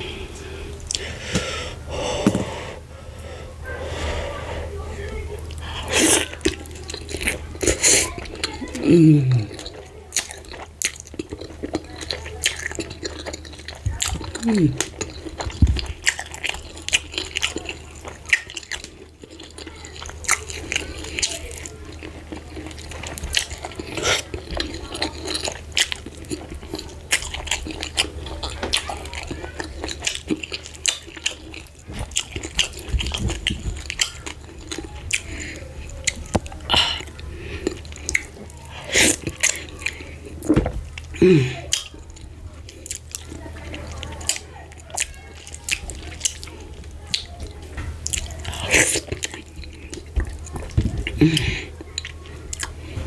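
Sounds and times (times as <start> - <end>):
wet chewing: 0.0 - 2.5, 5.0 - 53.0
lip smacks and mouth clicks: 44.2 - 50.8.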